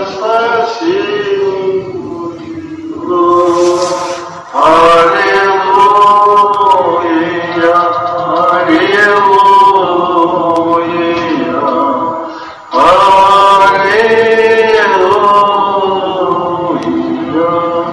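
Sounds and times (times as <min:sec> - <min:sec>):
person breathing: 0:12.2 - 0:12.7.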